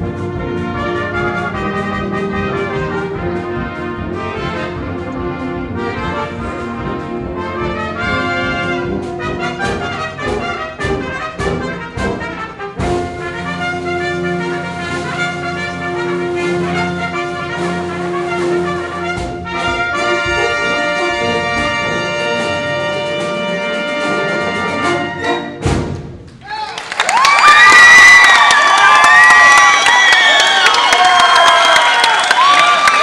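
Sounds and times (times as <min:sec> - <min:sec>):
trumpets playing: 0:00.0 - 0:25.7.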